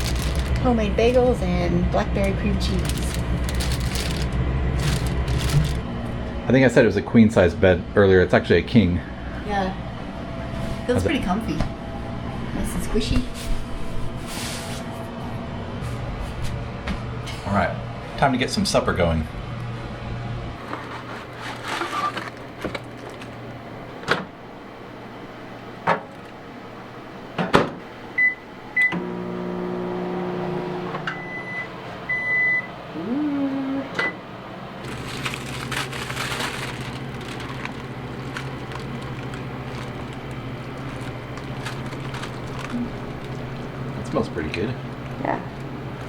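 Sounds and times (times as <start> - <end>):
microwave oven humming: 0.0 - 46.0
microwave keypad beeps: 28.2 - 29.0, 31.1 - 32.7.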